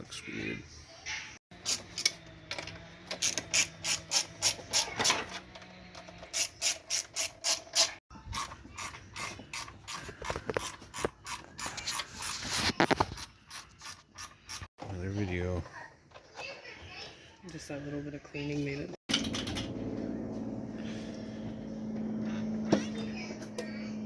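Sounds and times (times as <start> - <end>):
ratchet wrench clicking: 3.2 - 4.6, 6.3 - 10.0.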